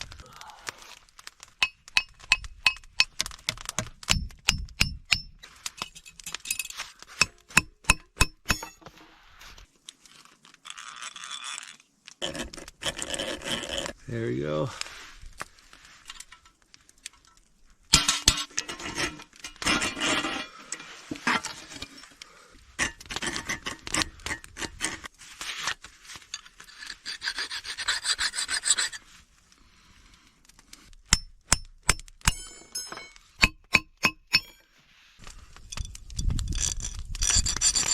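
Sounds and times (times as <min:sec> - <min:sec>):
rasping and scraping metal: 0:17.9 - 0:22.1, 0:22.8 - 0:29.1, 0:36.4 - 0:37.9.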